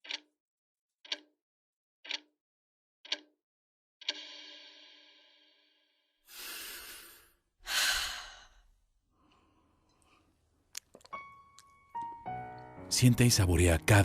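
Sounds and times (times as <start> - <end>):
person breathing in and sighing: 6.2 - 10.4.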